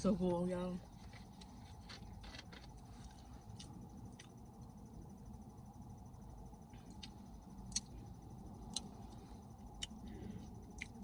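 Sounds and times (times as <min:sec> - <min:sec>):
low steady room hum: 0:00.0 - 0:11.0.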